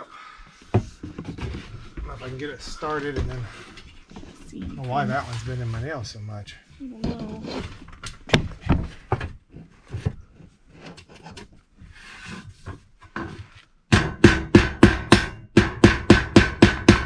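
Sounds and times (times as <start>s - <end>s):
hammer hitting nail into wood: 13.9s - 17.0s.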